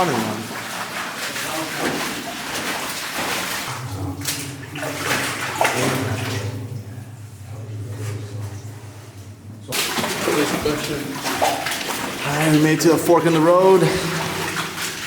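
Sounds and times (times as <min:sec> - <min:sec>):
footsteps sloshing through water: 0:00.0 - 0:15.0
steady low hum: 0:03.7 - 0:12.1.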